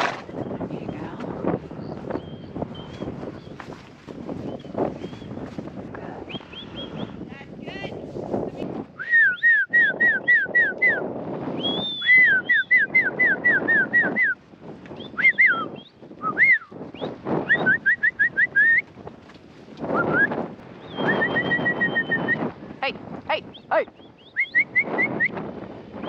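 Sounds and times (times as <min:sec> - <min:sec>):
rough rustling: 0:00.0 - 0:01.8, 0:02.6 - 0:06.5, 0:18.6 - 0:20.8
wind noise on microphone: 0:00.0 - 0:26.0
high whistled bird notes: 0:11.6 - 0:18.8, 0:20.0 - 0:22.4, 0:23.5 - 0:25.4.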